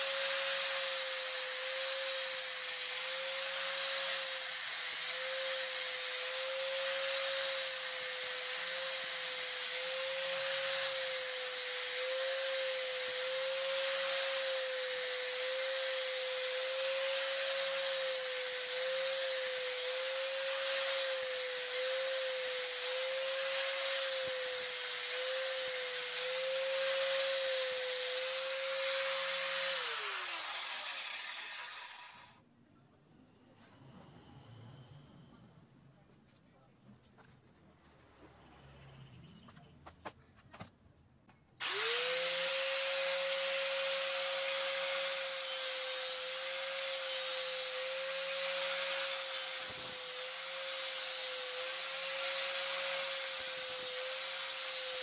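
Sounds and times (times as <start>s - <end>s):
high-speed electric motor hissing: 0.0s - 32.4s, 41.6s - 55.0s.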